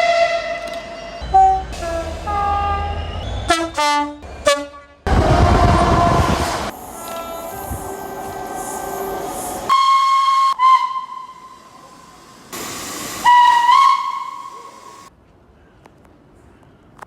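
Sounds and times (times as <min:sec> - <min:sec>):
steam locomotive whistle: 0:00.0 - 0:09.1, 0:09.7 - 0:12.0, 0:12.6 - 0:15.1
steam hissing: 0:05.1 - 0:10.5, 0:11.3 - 0:15.1.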